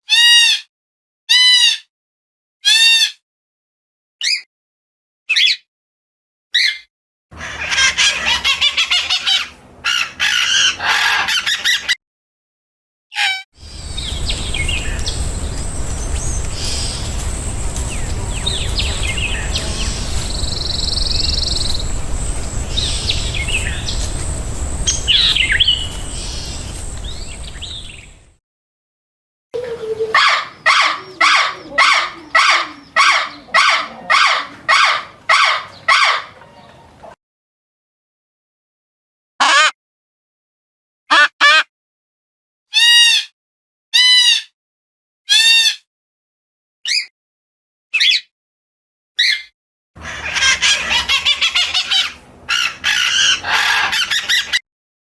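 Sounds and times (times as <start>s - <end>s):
bird calling repeatedly: 6.6s - 12.0s, 13.2s - 28.3s, 49.2s - 54.6s
birds chirping: 7.4s - 11.8s, 13.6s - 28.4s, 29.6s - 37.1s, 50.0s - 54.6s
bird calls: 7.4s - 11.9s, 13.6s - 28.3s, 29.6s - 36.9s, 49.2s - 54.6s
thin high steady tone: 13.6s - 28.0s
low outdoor rumble: 13.6s - 28.4s, 50.0s - 54.6s.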